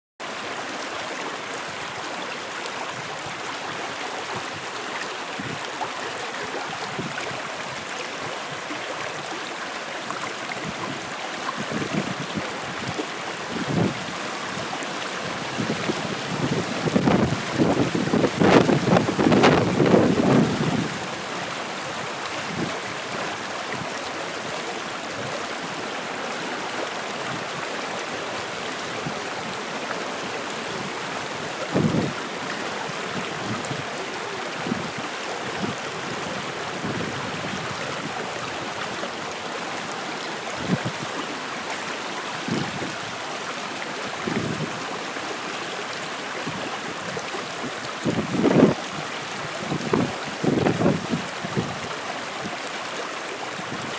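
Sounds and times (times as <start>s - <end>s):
water flowing: 0.2s - 53.9s
wind gusts on microphone: 5.3s - 5.7s, 6.6s - 7.8s, 10.5s - 39.3s, 39.9s - 41.3s, 42.4s - 43.3s, 44.1s - 45.0s, 46.4s - 52.6s.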